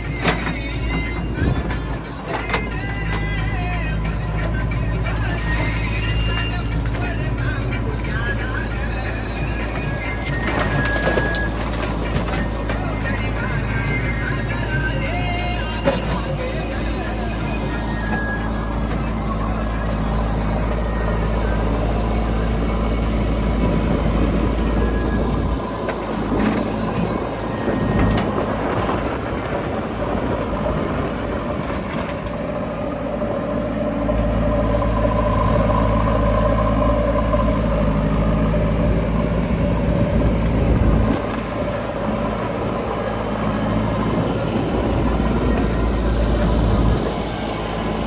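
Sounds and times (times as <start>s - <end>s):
heavy diesel engine running: 0.0s - 48.0s.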